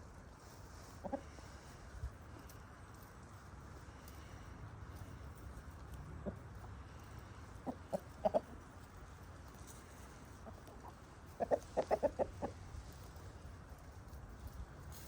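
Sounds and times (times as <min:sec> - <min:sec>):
hens clucking: 0:00.7 - 0:01.5, 0:06.0 - 0:12.8.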